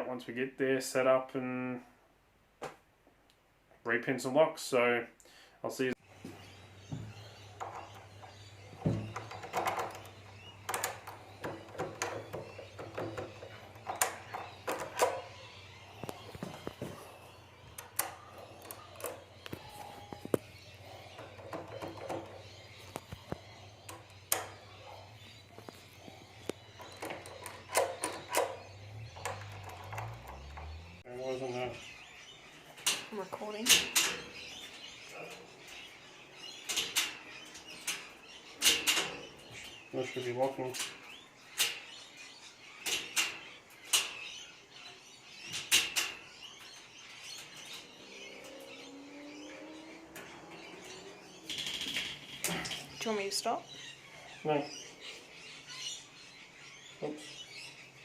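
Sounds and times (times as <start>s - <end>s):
door lock and handle clicking: 7.6s - 15.3s, 26.4s - 30.8s.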